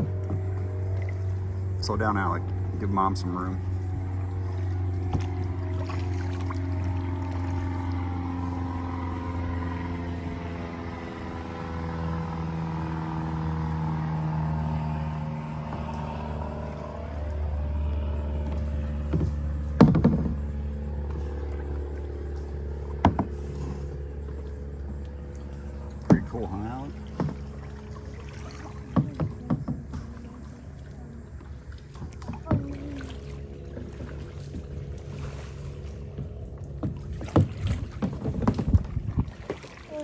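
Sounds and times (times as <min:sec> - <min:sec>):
engine drone: 0:00.0 - 0:40.0
sharp knocks: 0:19.0 - 0:20.5, 0:26.0 - 0:26.4.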